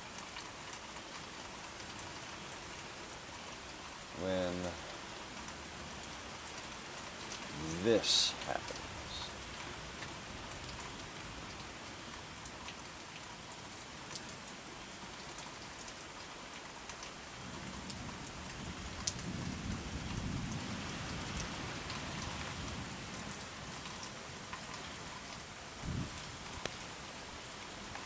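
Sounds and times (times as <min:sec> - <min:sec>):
raindrops ticking close by: 0:00.0 - 0:28.0
steady rain falling: 0:00.0 - 0:28.0.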